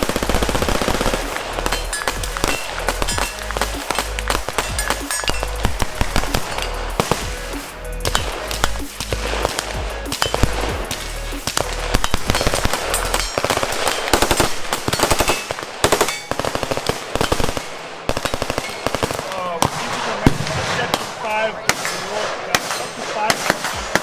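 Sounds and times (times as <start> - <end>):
background music: 0.0 - 15.0
automatic gunfire: 12.7 - 24.0.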